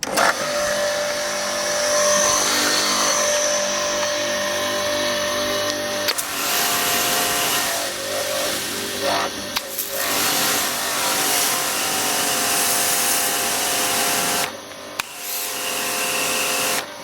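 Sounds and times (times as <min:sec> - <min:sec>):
click: 0:05.7 - 0:06.2
pressure washer spraying: 0:06.1 - 0:16.8.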